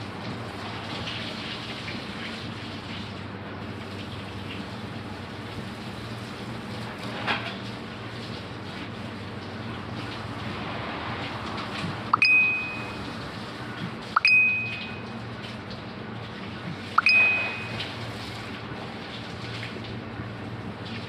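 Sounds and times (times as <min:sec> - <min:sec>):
high-pitched electronic dings: 0:12.1 - 0:13.0, 0:14.2 - 0:15.1, 0:17.0 - 0:18.0.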